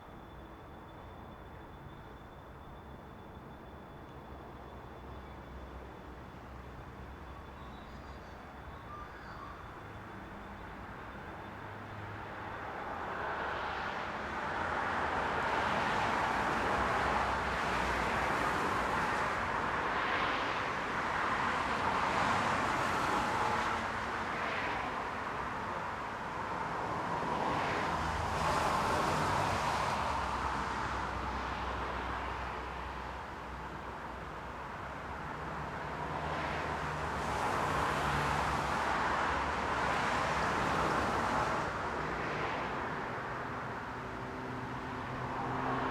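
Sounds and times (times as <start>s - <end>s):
cars driving past: 35.2s - 45.9s.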